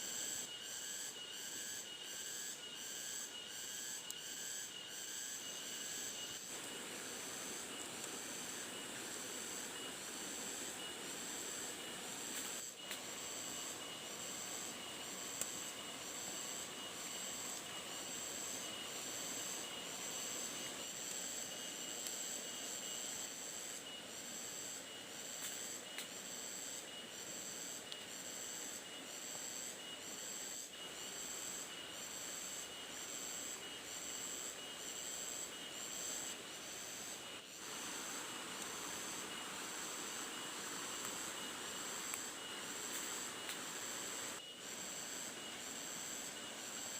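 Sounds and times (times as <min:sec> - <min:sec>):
faint high insect buzz: 0:00.0 - 0:46.9
insect chirping: 0:00.0 - 0:46.9
soft hiss: 0:35.8 - 0:46.9.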